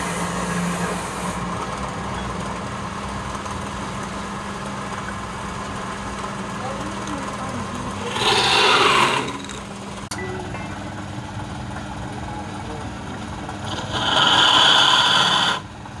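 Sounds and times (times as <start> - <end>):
wood lathe motor hum: 0.0 - 1.5, 7.8 - 9.7, 13.6 - 15.7.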